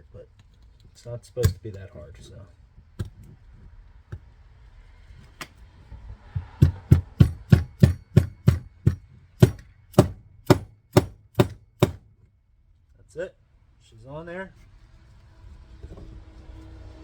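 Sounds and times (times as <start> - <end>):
sharp taps on metal part: 6.6 - 12.0.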